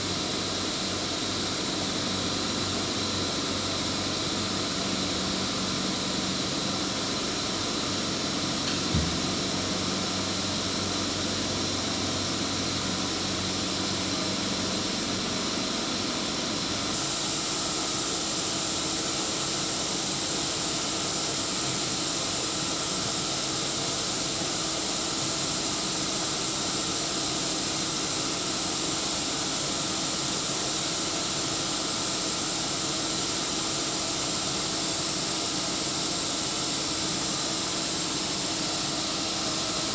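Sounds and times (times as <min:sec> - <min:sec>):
cnc router machinery whine: 0:00.0 - 0:39.9
short knock: 0:08.7 - 0:09.4.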